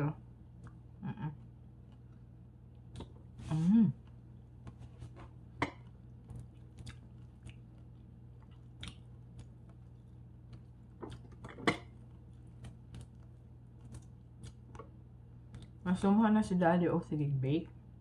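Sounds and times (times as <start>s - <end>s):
person chewing crispy food: 1.8s - 15.8s.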